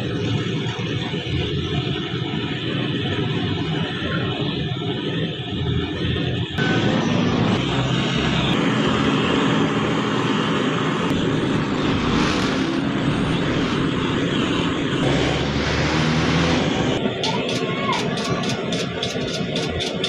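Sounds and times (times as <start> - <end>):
low hum: 5.6 - 17.3
mechanical roar: 6.0 - 20.0.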